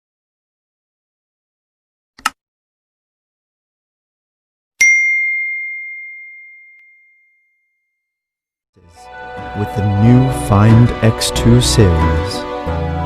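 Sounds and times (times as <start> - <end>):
bell-like ding: 4.8 - 8.1.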